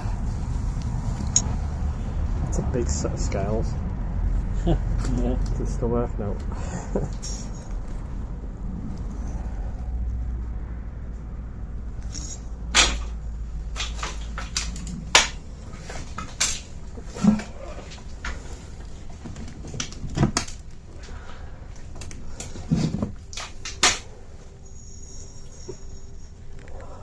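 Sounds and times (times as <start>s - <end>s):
low steady rumble: 0.0s - 27.0s.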